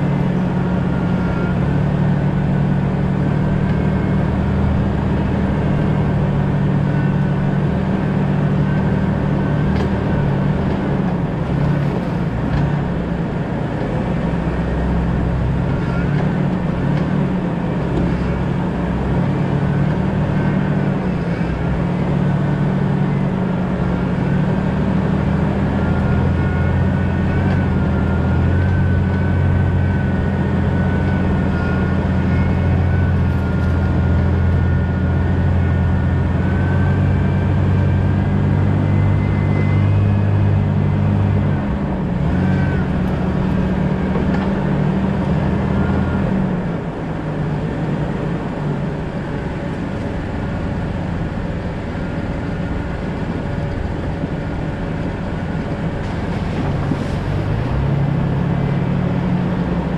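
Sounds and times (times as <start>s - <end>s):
car engine and road noise: 0.0s - 59.9s
thin wavering whine: 24.9s - 59.9s.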